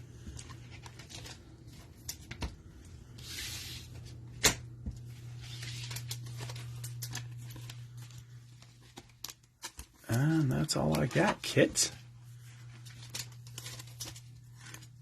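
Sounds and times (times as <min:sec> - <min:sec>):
steady low hum: 0:00.0 - 0:15.0
packaging rustling: 0:05.0 - 0:15.0
crinkling rustle: 0:05.1 - 0:15.0.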